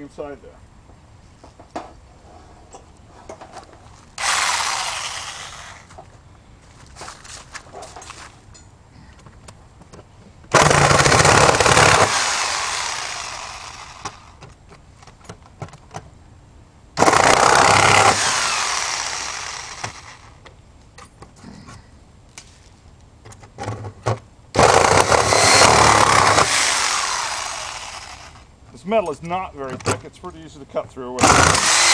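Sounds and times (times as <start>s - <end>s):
reciprocating saw cutting metal: 4.2s - 5.9s, 17.1s - 20.4s, 24.6s - 28.5s, 31.2s - 31.9s.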